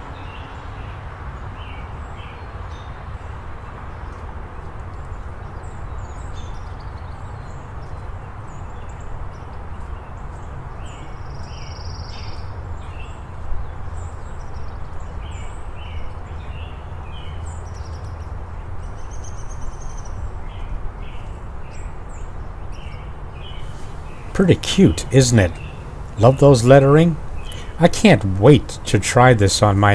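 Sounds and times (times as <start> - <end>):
bird trill: 23.6 - 29.3
low background rumble: 23.6 - 29.9
small birds chirping: 23.6 - 29.9.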